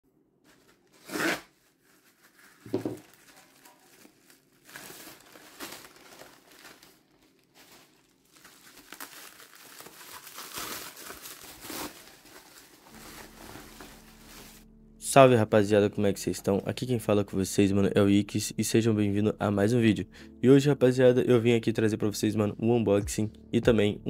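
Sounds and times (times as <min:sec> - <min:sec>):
wrapping crinkling and tearing: 0:00.5 - 0:14.8.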